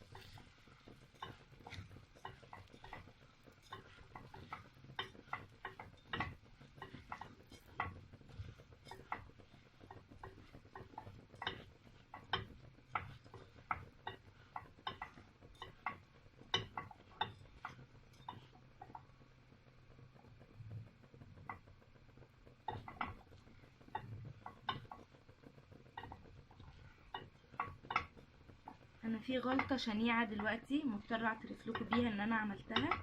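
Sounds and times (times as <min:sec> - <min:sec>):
spoon scraping a pot: 0:00.0 - 0:19.0.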